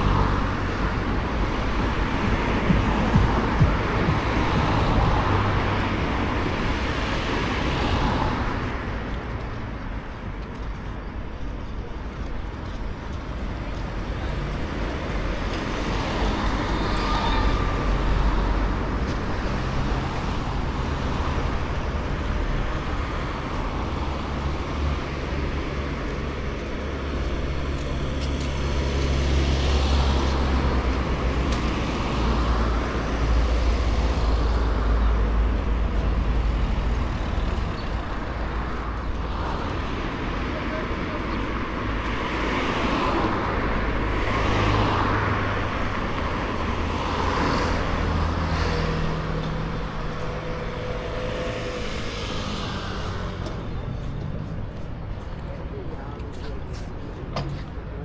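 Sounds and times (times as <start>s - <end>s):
vehicle passing: 0.0s - 9.0s
road traffic rumble: 0.0s - 58.0s.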